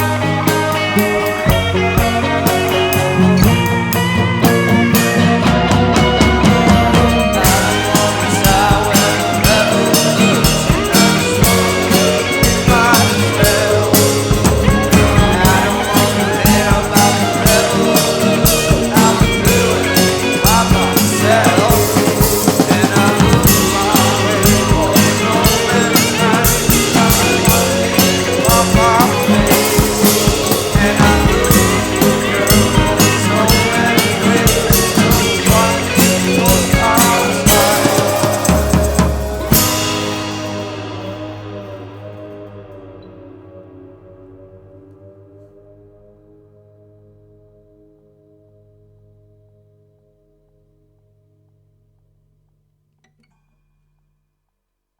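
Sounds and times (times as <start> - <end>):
drum kit beat: 0.0 - 42.6
rock band playing: 0.0 - 45.2.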